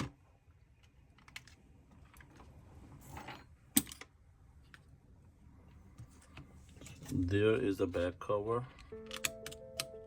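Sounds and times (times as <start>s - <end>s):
phone parts clicking and tapping: 8.8s - 10.0s.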